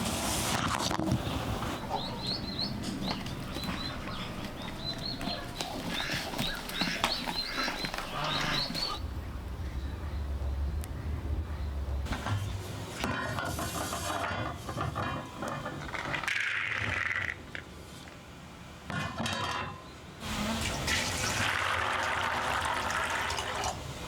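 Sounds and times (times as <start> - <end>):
small birds chirping: 1.1 - 12.7
low steady hum: 1.1 - 16.4.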